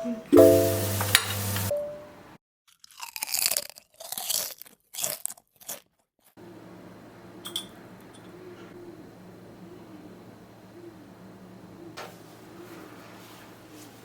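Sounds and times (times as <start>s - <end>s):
low steady hum: 0.0s - 2.3s
crunching crisp food: 2.7s - 6.4s.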